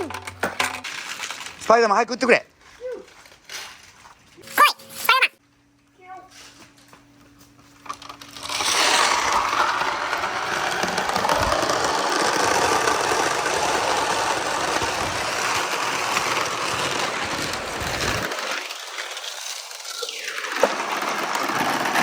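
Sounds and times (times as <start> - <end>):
marbles rolling on wooden track: 7.9 - 22.0.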